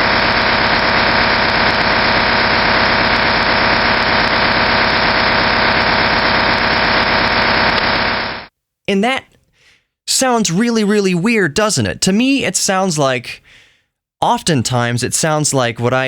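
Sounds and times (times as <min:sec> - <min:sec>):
rough radio data drone: 0:00.0 - 0:08.5.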